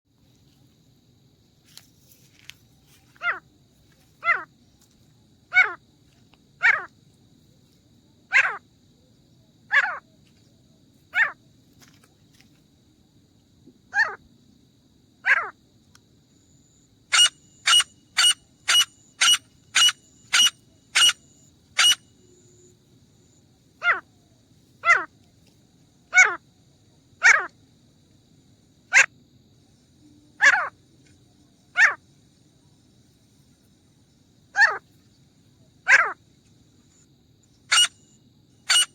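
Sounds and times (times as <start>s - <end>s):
francolin calling: 16.7s - 22.7s, 34.5s - 34.9s, 35.8s - 36.2s, 37.5s - 38.9s.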